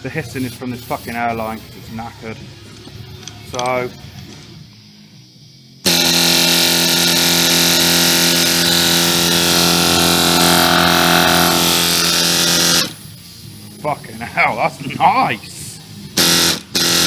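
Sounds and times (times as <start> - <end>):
hissing exhaust air: 4.3 - 17.0
pneumatic sander humming: 5.8 - 13.1, 16.2 - 17.0.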